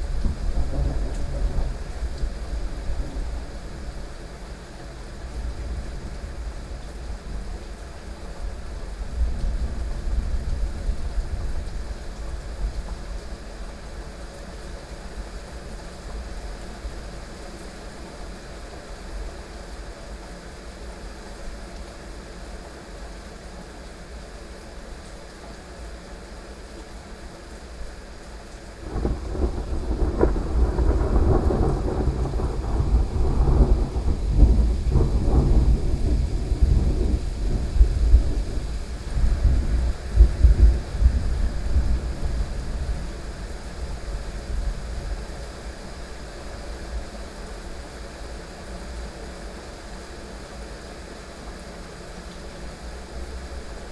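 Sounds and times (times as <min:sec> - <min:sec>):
rolling thunder: 0:00.0 - 0:04.0, 0:28.8 - 0:45.3
heavy rain falling: 0:00.0 - 0:53.9.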